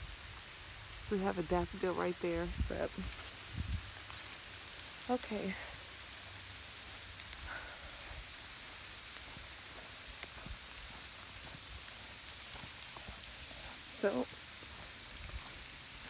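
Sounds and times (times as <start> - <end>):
sleet and snow hissing: 0.0 - 16.0.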